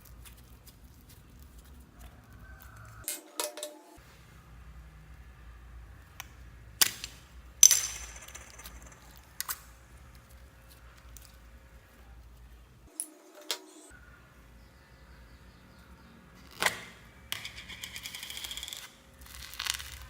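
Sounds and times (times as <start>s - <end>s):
hard objects clicking and tapping: 6.2s - 10.2s.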